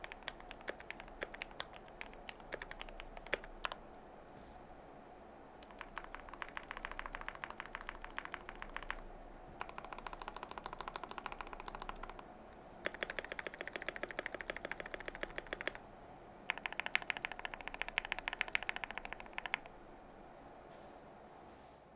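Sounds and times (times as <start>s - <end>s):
mechanical keyboard typing: 0.0s - 3.8s, 5.6s - 15.8s, 16.5s - 19.8s.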